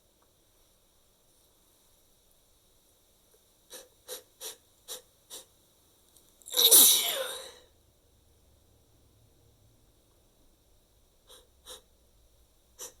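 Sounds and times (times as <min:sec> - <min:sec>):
person sneezing: 0:06.5 - 0:07.6.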